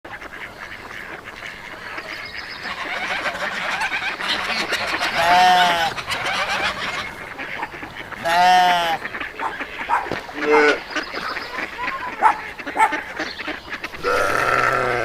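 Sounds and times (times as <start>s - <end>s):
loud drawn-out animal call: 2.6s - 10.8s, 13.9s - 15.0s.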